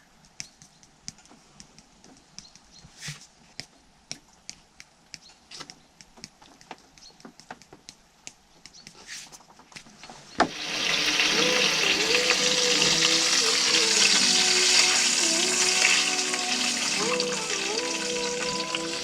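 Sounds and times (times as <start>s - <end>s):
food hitting hot pan: 10.5s - 19.0s
food sizzling in pan: 10.5s - 19.0s.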